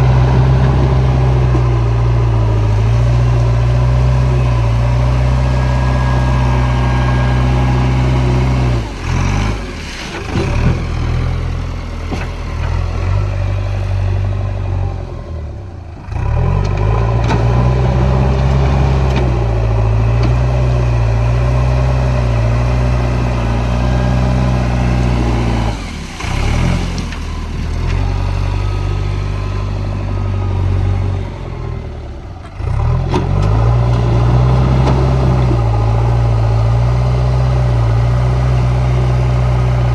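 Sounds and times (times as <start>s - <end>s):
diesel engine running hard: 0.0s - 39.9s.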